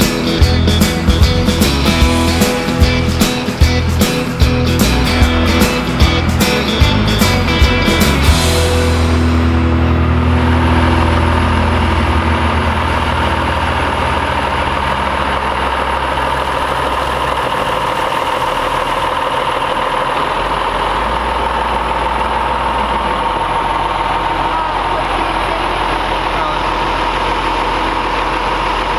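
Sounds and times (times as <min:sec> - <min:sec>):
background music: 0:00.0 - 0:15.0
truck engine idling: 0:00.0 - 0:28.9.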